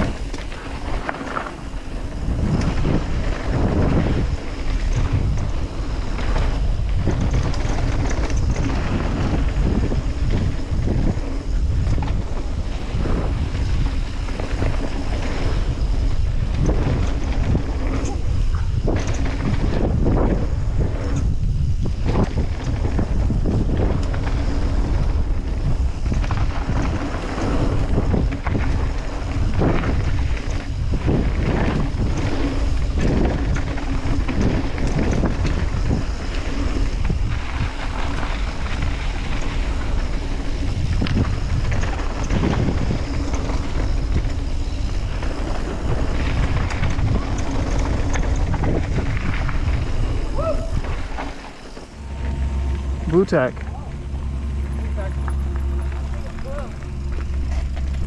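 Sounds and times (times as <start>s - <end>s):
bike rattling and knocking: 0.0s - 58.0s
wind rushing over microphone: 0.0s - 58.0s.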